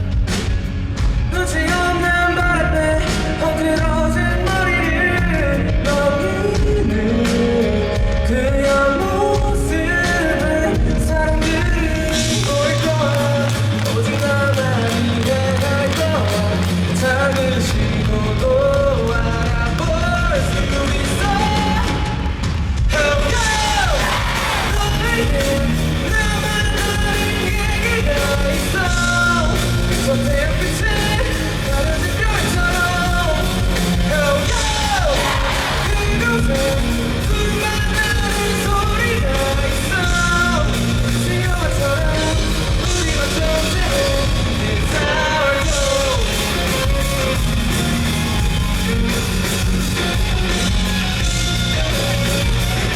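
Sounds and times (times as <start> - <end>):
live rock band playing: 0.0 - 52.9
vocalist singing and shouting: 1.2 - 52.9.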